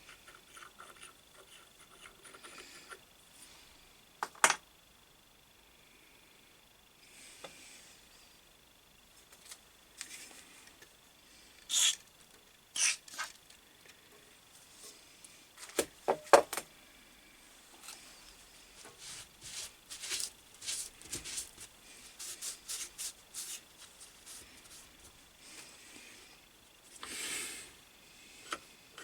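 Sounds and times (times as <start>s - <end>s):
metal parts scraping and clicking: 12.8s - 13.4s.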